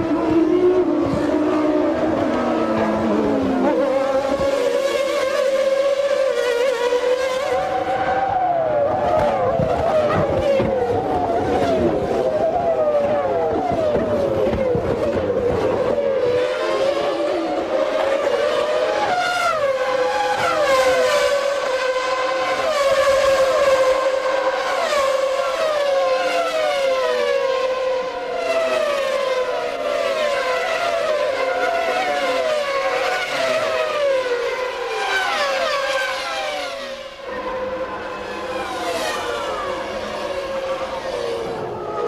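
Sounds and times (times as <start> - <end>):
racing car engines revving: 0.0 - 42.0.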